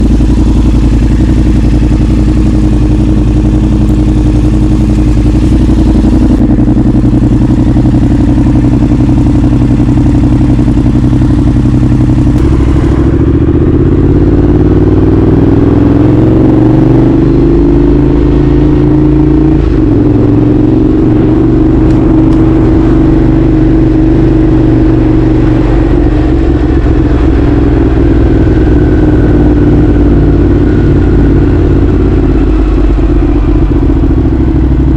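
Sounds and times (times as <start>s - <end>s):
motorcycle engine revving: 0.0s - 34.9s.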